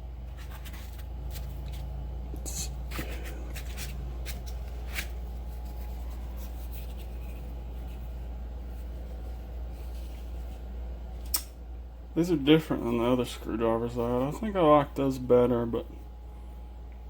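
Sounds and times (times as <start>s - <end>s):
steady low hum: 0.0s - 17.0s
rustling and scraping of tools: 0.3s - 10.8s.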